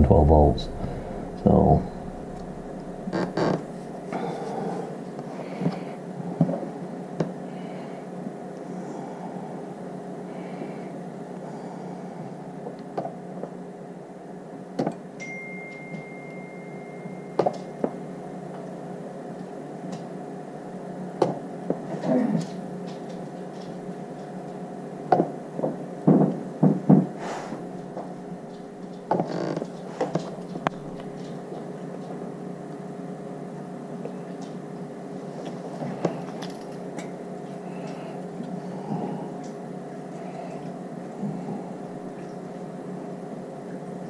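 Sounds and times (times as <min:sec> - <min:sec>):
steady low hum: 0:00.0 - 0:44.0.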